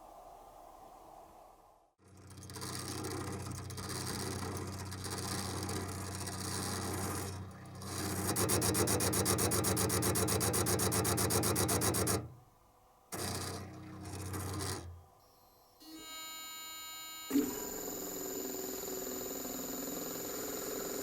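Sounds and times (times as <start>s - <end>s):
fast even pulsing: 2.3s - 12.4s
air conditioner compressor humming: 4.8s - 15.2s.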